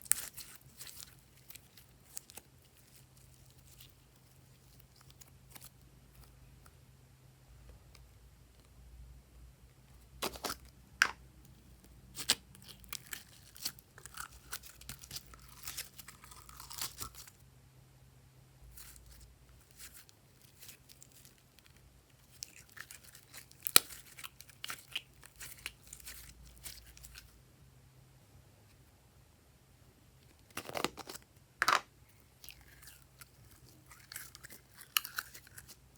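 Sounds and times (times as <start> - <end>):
slime crackling and popping: 0.0 - 6.3, 12.1 - 17.4, 18.7 - 27.3.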